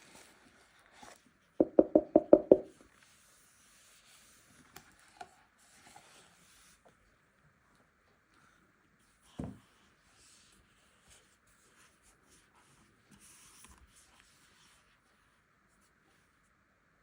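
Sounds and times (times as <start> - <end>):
rapid hollow taps: 1.6 - 2.7.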